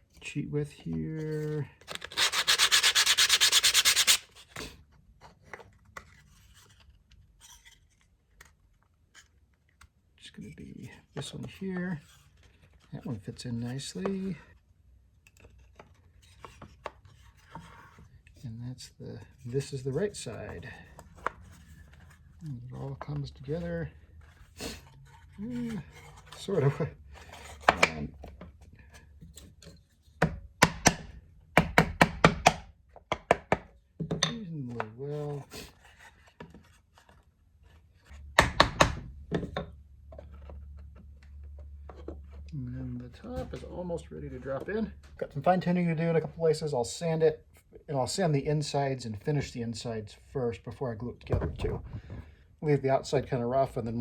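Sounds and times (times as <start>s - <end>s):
wooden parts tapping and scraping: 1.8s - 4.1s, 25.0s - 31.1s, 38.1s - 42.5s, 51.2s - 52.4s
sandpaper rubbing on wood: 1.9s - 4.4s
wooden knocks and taps: 30.2s - 34.4s, 38.4s - 42.2s, 51.3s - 52.3s
knock: 38.4s - 39.5s.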